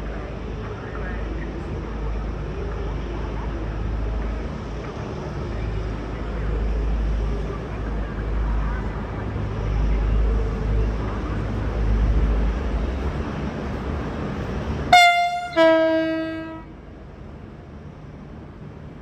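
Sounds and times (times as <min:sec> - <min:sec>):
train engine low rumble: 0:00.0 - 0:19.0
train horn: 0:14.9 - 0:16.8.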